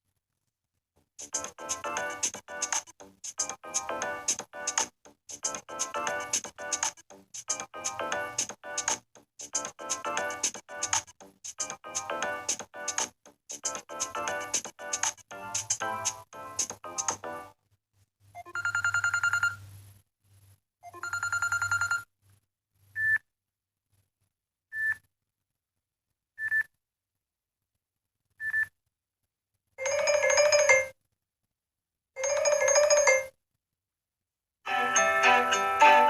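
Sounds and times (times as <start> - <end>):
phone ringtone trilling: 18.5 - 19.6, 21.0 - 22.0, 29.8 - 30.9, 32.2 - 33.3, 34.7 - 36.0.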